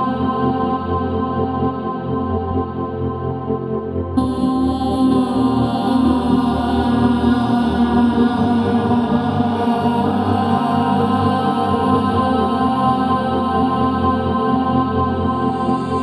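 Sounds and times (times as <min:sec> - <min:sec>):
chant-like vocal drone: 0:00.0 - 0:16.0
slow ambient music: 0:00.0 - 0:16.0.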